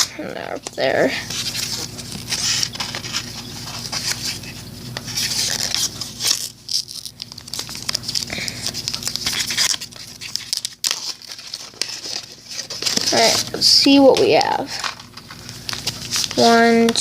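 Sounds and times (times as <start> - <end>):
card pack crinkling and tearing: 0.0 - 17.0
handling rustle: 0.5 - 17.0.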